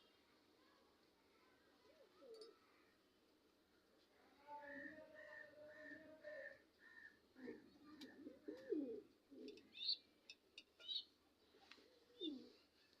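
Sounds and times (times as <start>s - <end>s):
pigeons cooing: 7.4s - 10.0s, 11.9s - 12.6s.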